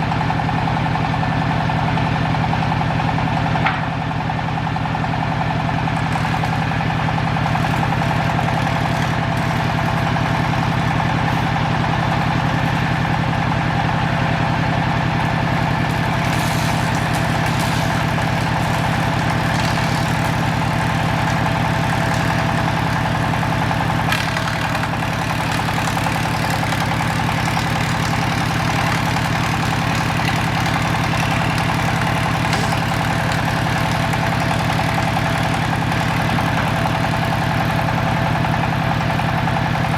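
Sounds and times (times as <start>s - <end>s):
woodworking machine droning: 0.0s - 39.9s.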